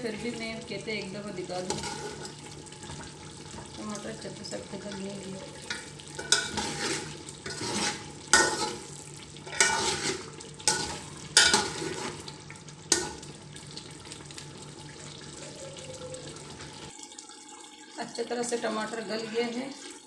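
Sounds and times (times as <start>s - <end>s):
food sizzling in a pot: 0.0s - 20.0s
spoon scraping a cooking pot: 1.7s - 2.5s, 5.6s - 12.3s.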